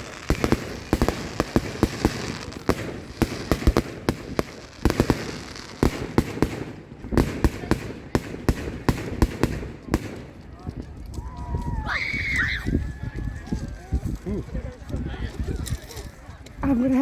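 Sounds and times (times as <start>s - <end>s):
fireworks shells bursting: 0.0s - 10.8s
fireworks crackling: 0.0s - 16.1s.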